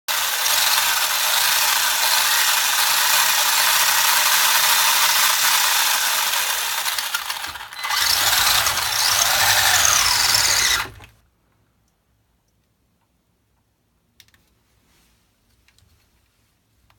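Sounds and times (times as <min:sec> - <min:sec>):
toy car motor whirring: 0:00.1 - 0:11.1.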